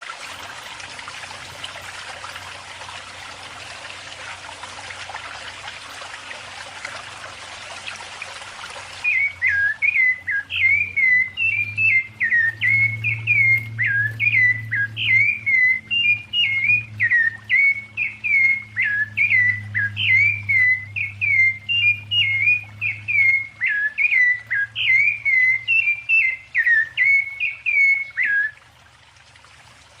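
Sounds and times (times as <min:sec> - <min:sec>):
bird singing whistled notes: 0:09.0 - 0:28.6.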